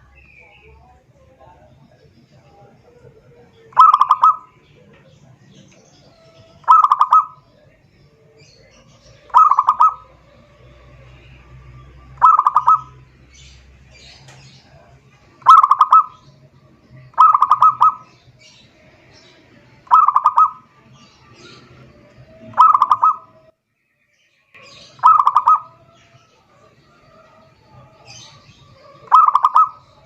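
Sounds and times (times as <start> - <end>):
dove cooing: 2.0 - 16.4, 17.0 - 23.5, 24.6 - 30.0
high chirps: 3.7 - 4.7, 6.1 - 7.6, 8.4 - 10.4, 11.3 - 14.4, 15.4 - 16.4, 17.0 - 23.5, 24.6 - 30.0.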